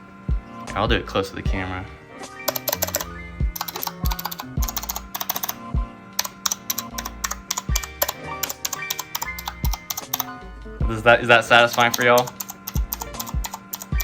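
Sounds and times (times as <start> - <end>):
background music with beat: 0.0 - 14.0
mechanical keyboard clicking: 2.5 - 5.6, 6.2 - 10.3, 11.6 - 14.0.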